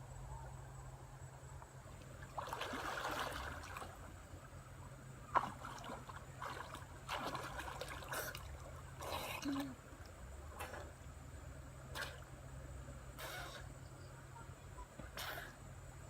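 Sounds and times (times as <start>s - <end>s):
water sloshing and splashing: 1.9s - 4.4s, 5.2s - 11.2s, 11.8s - 12.4s.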